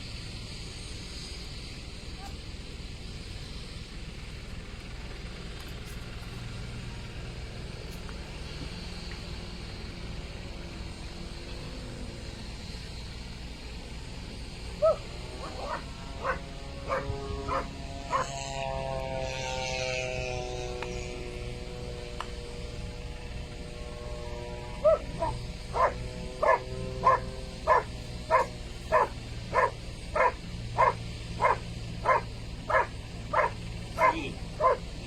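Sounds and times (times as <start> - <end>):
dog barking in sharp yelps: 14.8 - 18.3, 24.8 - 34.9
dog whining: 14.8 - 18.3, 24.8 - 34.8.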